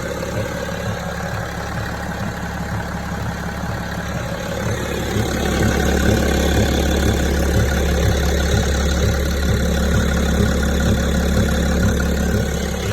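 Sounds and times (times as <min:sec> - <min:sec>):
diesel engine idling: 0:00.0 - 0:12.9
engine knocking: 0:00.0 - 0:12.9.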